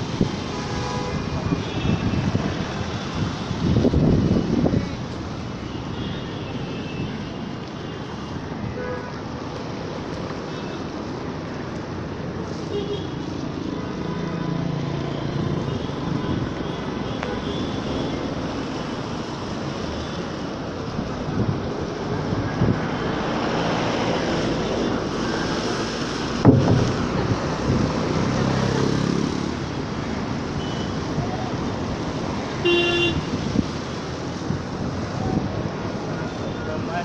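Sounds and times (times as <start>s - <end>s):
road traffic: 0.0s - 37.0s
loud thump: 26.4s - 27.2s
car horn toot: 32.6s - 33.3s.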